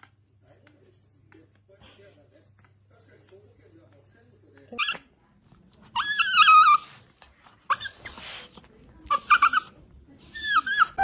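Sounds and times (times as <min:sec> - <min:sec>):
animal whining calls: 0:06.0 - 0:07.0.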